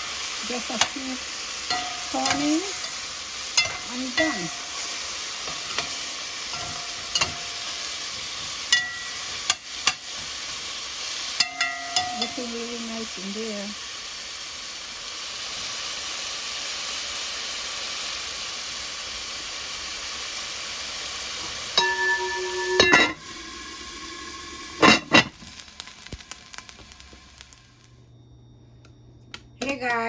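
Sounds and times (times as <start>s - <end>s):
liver sizzling in a frying pan: 0.0s - 28.0s
ringing tone: 21.8s - 23.5s.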